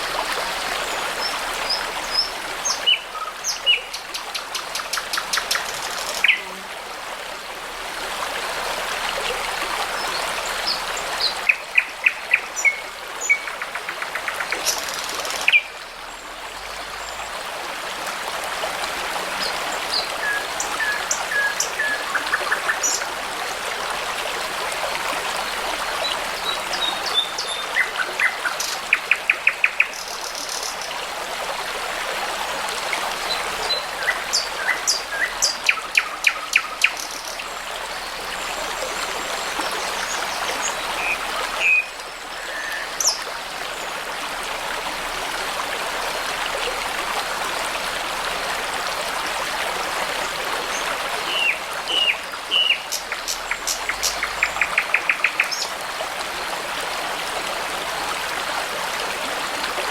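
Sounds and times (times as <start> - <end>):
brook babbling: 0.0 - 59.9
songbirds singing: 50.7 - 55.8.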